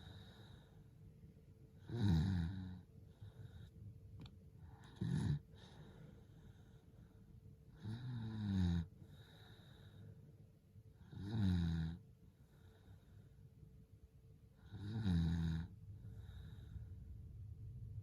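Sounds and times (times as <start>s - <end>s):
soft breathing: 0.0s - 1.3s, 3.0s - 7.6s, 9.0s - 10.5s, 12.3s - 13.7s, 15.8s - 18.0s.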